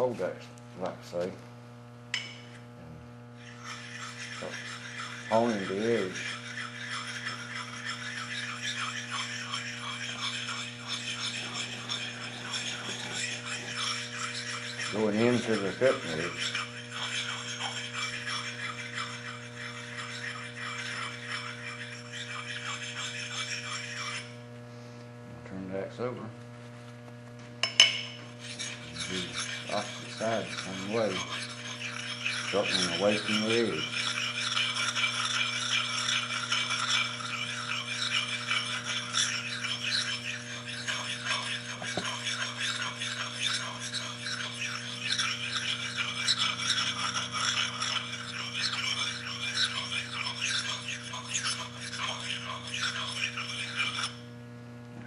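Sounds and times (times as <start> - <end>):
electrical hum: 0.0 - 55.0
sharpening stone rubbing axe: 2.1 - 2.6, 3.4 - 24.4, 27.6 - 54.3.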